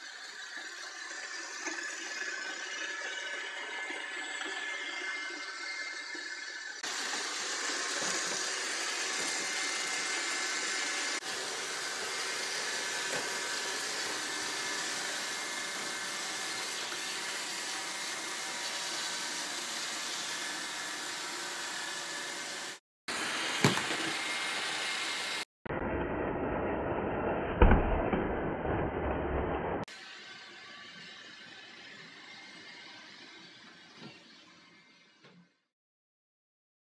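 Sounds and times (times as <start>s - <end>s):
robot vacuum whirring: 3.8s - 18.6s, 22.0s - 25.4s.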